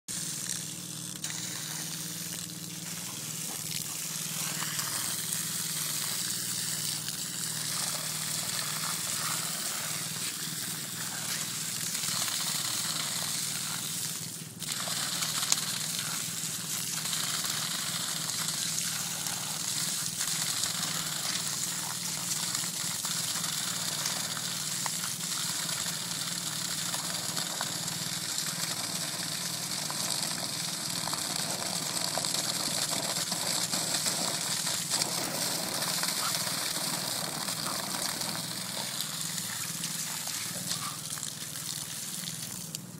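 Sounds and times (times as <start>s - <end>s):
water gushing: 0.1s - 42.9s.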